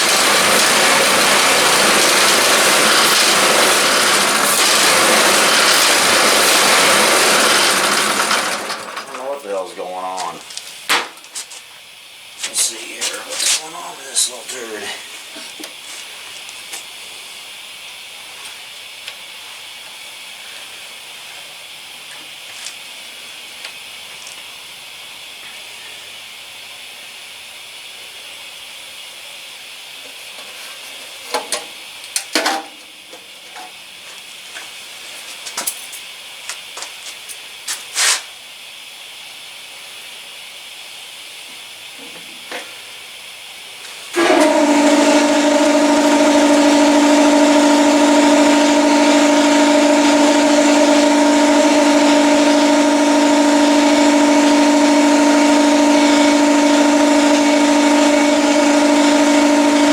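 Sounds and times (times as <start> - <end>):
engine running loudly: 0.0 - 10.1, 44.2 - 59.9.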